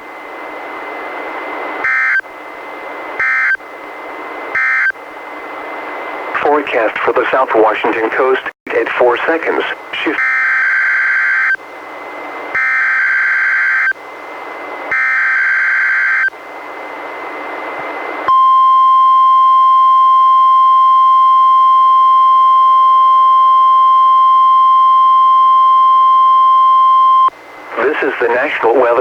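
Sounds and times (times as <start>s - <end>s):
steady warning alarm tone: 1.8s - 2.3s, 3.2s - 3.6s, 4.5s - 5.0s, 10.0s - 11.6s, 12.5s - 14.0s, 14.9s - 16.3s, 18.3s - 27.3s.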